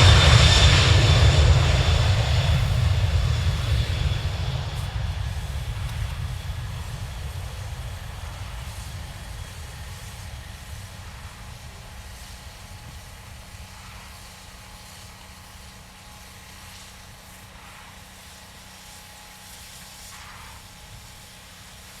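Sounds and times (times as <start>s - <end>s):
jet engines rumbling: 0.0s - 16.3s.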